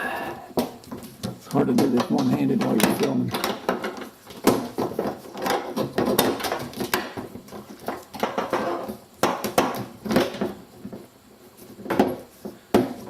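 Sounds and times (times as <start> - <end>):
plastic clicks and knocks: 0.6 - 10.6.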